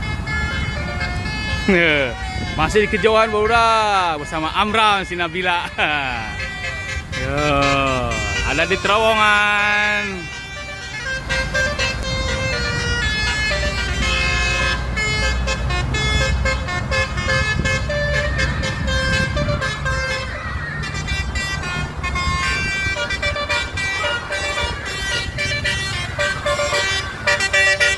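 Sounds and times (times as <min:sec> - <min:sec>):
low vehicle rumble: 0:00.0 - 0:27.9
multi-tone bus horn tune: 0:00.0 - 0:27.9.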